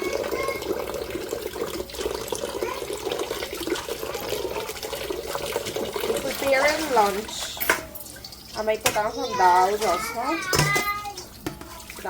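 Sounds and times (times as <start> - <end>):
water splashing: 0.0 - 12.0
tap running into sink: 5.3 - 8.0, 8.8 - 12.0.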